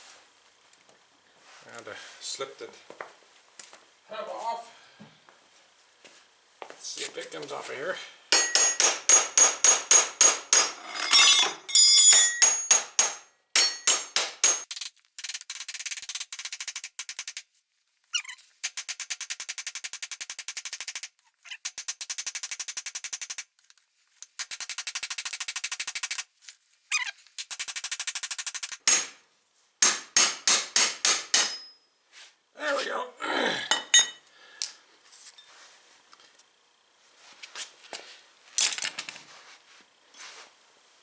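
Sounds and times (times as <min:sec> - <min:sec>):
hammer striking steel hub: 0:08.3 - 0:14.7, 0:28.8 - 0:29.2, 0:29.8 - 0:31.9, 0:33.7 - 0:34.2.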